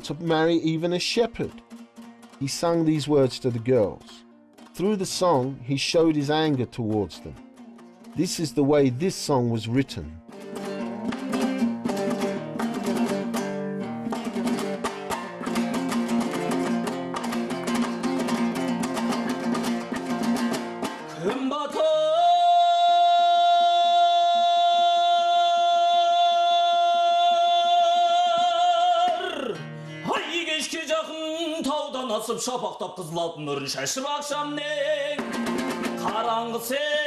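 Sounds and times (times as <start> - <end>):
plucked string instrument strummed: 0.0 - 31.2, 34.0 - 37.0
person singing long high note: 21.2 - 30.3.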